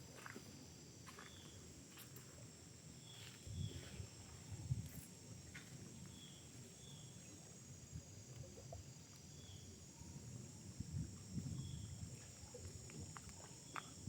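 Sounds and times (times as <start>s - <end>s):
high-pitched insect drone: 3.0s - 14.0s.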